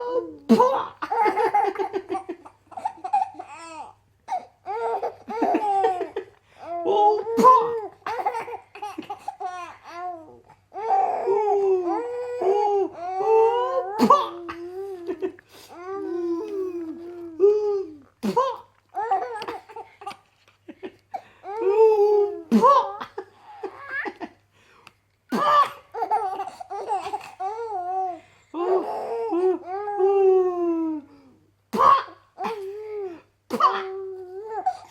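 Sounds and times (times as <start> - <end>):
baby laughing: 0.4 - 6.4, 7.2 - 11.3, 18.3 - 20.3, 20.9 - 24.4, 25.4 - 29.8.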